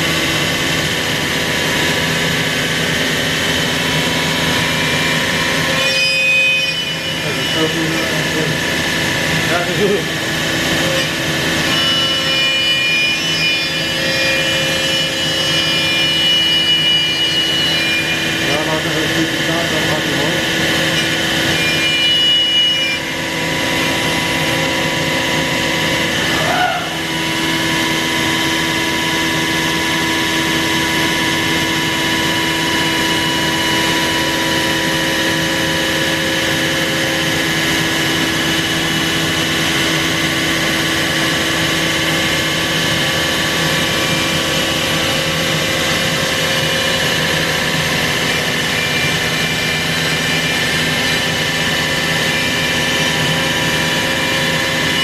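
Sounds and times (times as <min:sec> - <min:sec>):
router spindle whine: 0:00.0 - 0:55.0.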